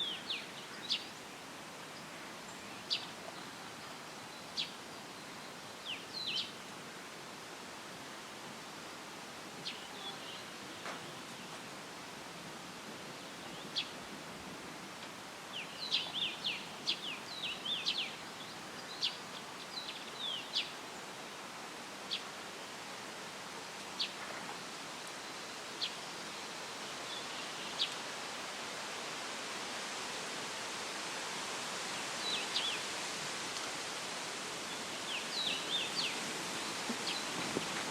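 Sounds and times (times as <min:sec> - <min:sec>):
leaves rustling in breeze: 0:00.0 - 0:37.9
small songbird chirping: 0:15.5 - 0:20.8, 0:34.7 - 0:37.4.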